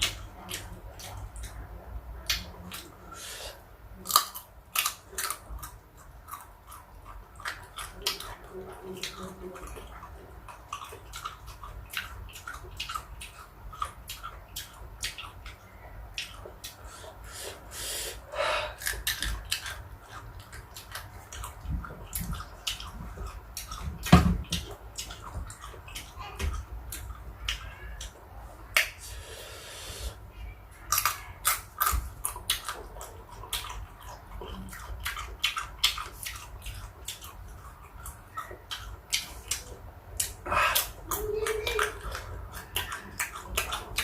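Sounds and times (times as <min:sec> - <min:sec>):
person chewing crunchy fruit: 0:00.0 - 0:44.0.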